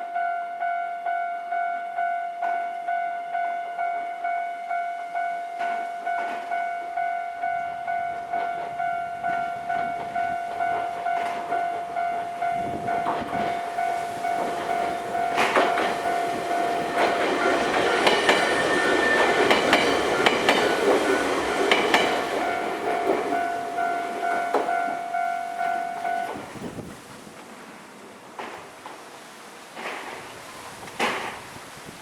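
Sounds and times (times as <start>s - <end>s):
level crossing warning bell: 0.0s - 26.9s
train rumbling over crossing: 0.2s - 32.0s
train wheels clacking on rail joints: 5.6s - 6.7s, 7.4s - 27.5s, 28.2s - 31.5s.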